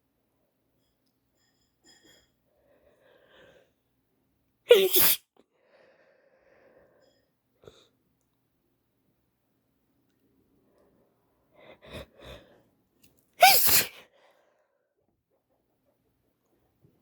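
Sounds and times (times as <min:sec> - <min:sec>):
quiet breathing: 0:01.9 - 0:04.1, 0:05.4 - 0:08.0, 0:10.4 - 0:13.0, 0:14.0 - 0:15.1
woman sneezing: 0:04.7 - 0:05.2, 0:13.4 - 0:14.0.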